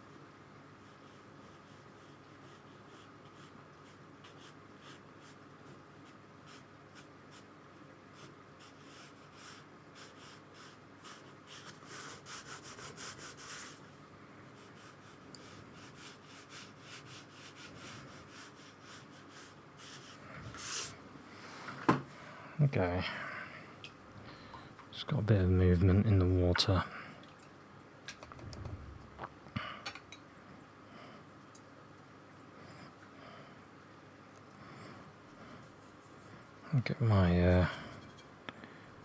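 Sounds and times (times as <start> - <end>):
paintbrush scratching on paper: 0.8 - 7.5, 8.2 - 13.8, 14.6 - 21.0.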